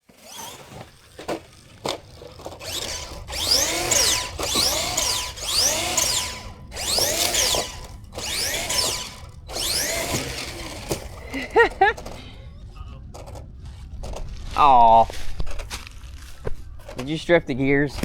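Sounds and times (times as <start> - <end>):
rc truck motor whining: 0.0 - 12.4.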